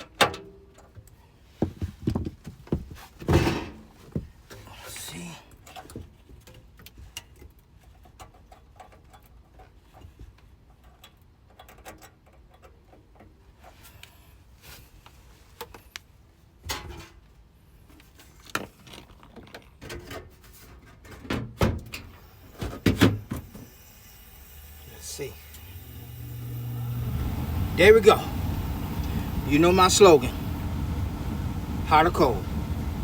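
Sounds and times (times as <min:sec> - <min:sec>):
faint low hum: 0:22.0 - 0:33.0.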